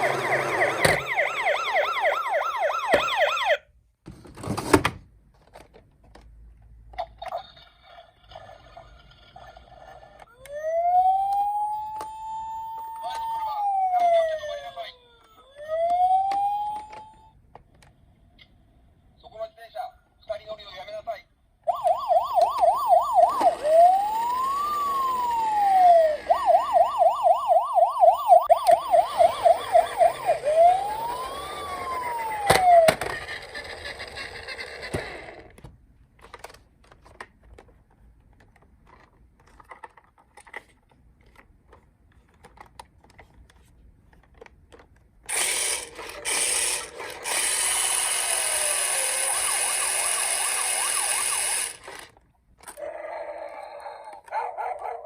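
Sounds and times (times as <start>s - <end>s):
toy siren yelp and wail: 0.0s - 3.6s, 10.3s - 17.4s, 21.7s - 35.0s, 46.5s - 52.0s, 52.7s - 55.0s
small clicks and rattles: 36.2s - 45.4s.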